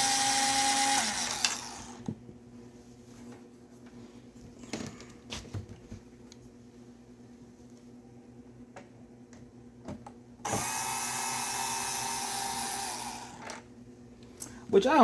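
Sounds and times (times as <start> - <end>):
power drill driving screw: 0.0 - 2.0, 10.4 - 13.6.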